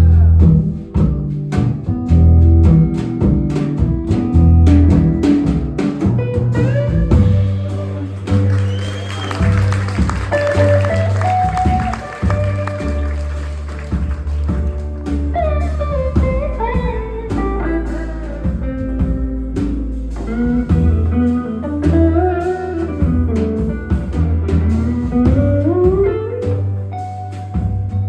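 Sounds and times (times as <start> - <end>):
bass guitar: 0.0 - 28.0
drum kit: 0.0 - 28.0
lead guitar with bent notes: 2.6 - 28.0.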